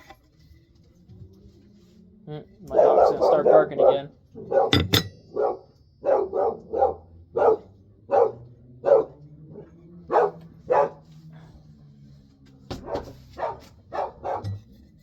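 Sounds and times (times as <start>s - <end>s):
dog barking: 2.8s - 9.2s, 10.1s - 11.1s, 12.8s - 14.5s.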